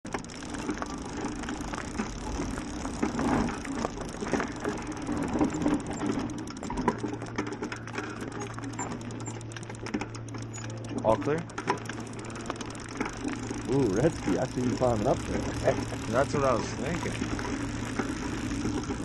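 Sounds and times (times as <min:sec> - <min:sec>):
bicycle cart rolling: 0:00.0 - 0:19.0
fine mechanical ticks and rattles: 0:00.0 - 0:19.0
low steady hum: 0:00.1 - 0:19.0.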